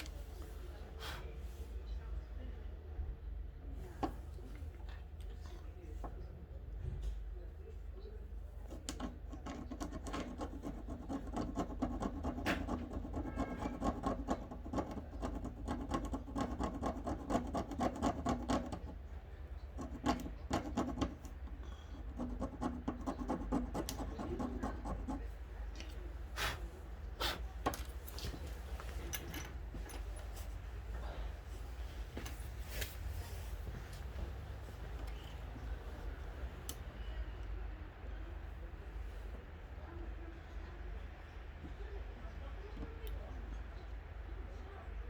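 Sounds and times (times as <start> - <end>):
scraping and rubbing on metal part: 8.7 - 25.4.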